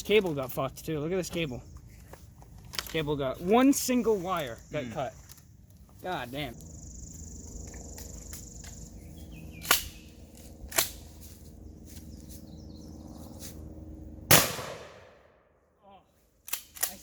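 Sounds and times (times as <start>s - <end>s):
loud gunshot: 14.3s - 15.4s.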